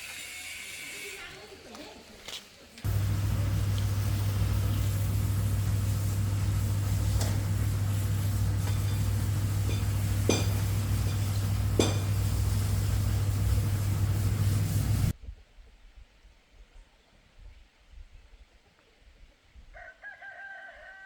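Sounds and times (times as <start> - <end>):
steady low hum: 2.8 - 15.1.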